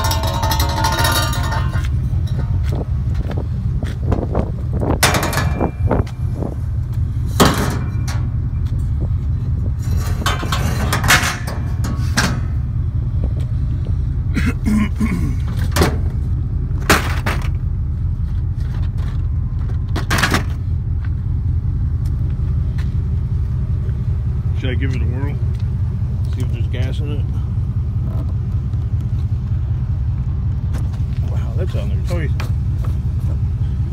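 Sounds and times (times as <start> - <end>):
sharp knocks and clanks: 0.0 - 3.4, 5.0 - 6.2, 7.3 - 8.4, 9.8 - 12.7, 15.5 - 16.2, 16.8 - 17.6
vehicle engine running: 0.0 - 33.9.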